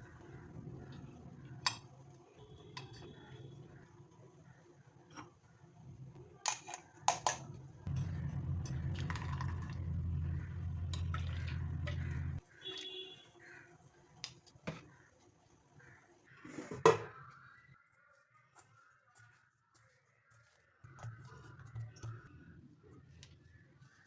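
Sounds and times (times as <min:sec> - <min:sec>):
steady low hum: 0:07.9 - 0:12.4.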